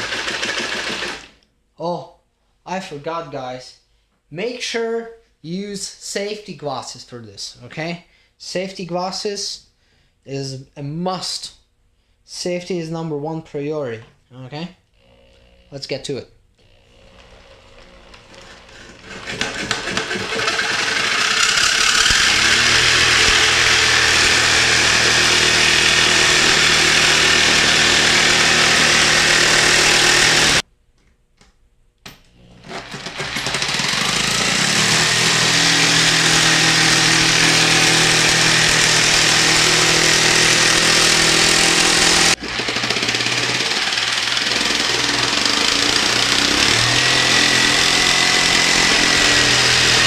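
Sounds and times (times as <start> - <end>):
jigsaw cutting metal sheet: 0.0 - 1.4, 16.6 - 30.6, 32.4 - 50.0.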